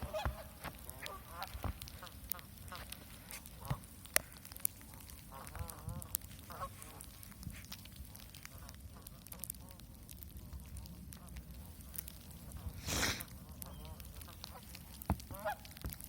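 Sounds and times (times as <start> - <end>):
waterfowl calling: 0.0 - 3.0, 5.3 - 7.0, 13.6 - 15.8.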